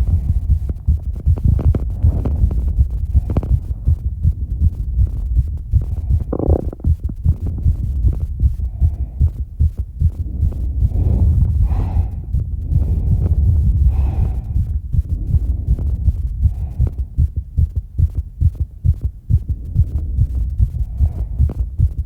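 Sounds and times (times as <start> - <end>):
fast heartbeat: 0.0 - 22.0
heavy breathing: 8.4 - 17.4, 19.4 - 22.0.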